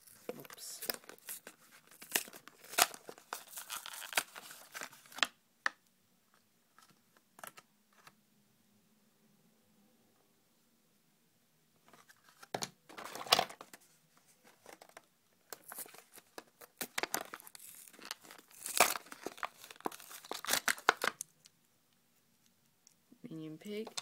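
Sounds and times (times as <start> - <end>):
plastic crinkling: 0.0 - 5.3, 14.5 - 21.5
cardboard tearing: 16.8 - 21.2.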